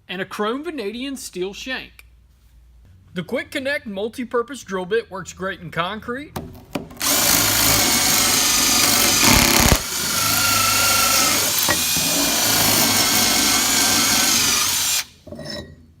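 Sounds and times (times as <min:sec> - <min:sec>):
power drill drilling into concrete: 0:07.0 - 0:15.2.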